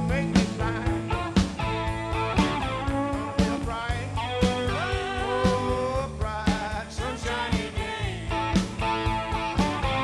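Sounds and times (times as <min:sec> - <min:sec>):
lead guitar with bent notes: 0:00.0 - 0:06.3, 0:08.0 - 0:10.0
band playing instrumental: 0:00.0 - 0:10.0.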